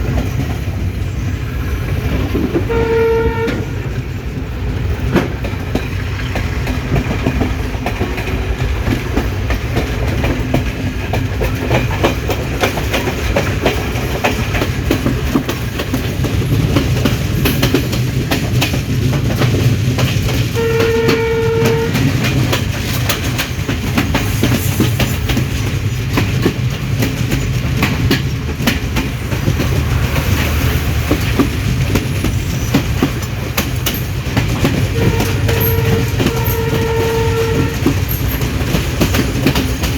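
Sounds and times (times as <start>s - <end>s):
train rumbling on track: 0.0s - 39.9s
wheels clattering over rail joints: 0.0s - 39.9s
train horn: 2.4s - 4.0s, 20.5s - 22.6s, 34.7s - 38.4s.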